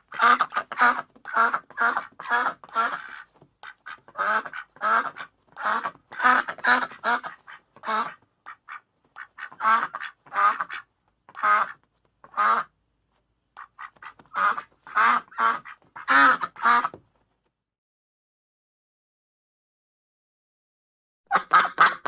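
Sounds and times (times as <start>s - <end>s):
duck quacking: 0.0s - 12.8s, 13.6s - 17.0s, 21.3s - 22.0s.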